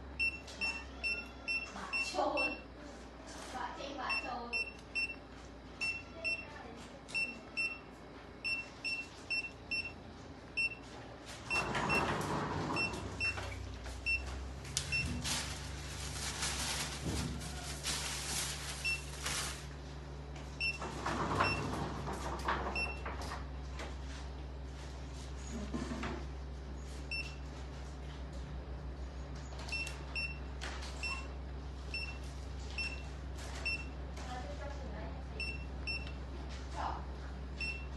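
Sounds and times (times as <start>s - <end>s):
patient monitor beeping: 0.2s - 2.7s, 4.0s - 15.2s, 18.8s - 19.2s, 20.5s - 23.1s, 27.1s - 27.4s, 29.4s - 34.0s, 35.4s - 36.2s, 37.6s - 37.9s
rustling noise: 13.8s - 19.8s.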